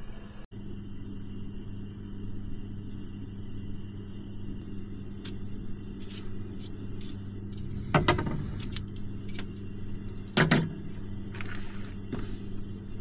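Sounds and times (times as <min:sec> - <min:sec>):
steady low hum: 0:00.0 - 0:13.0
knocks and clatters: 0:06.0 - 0:12.4.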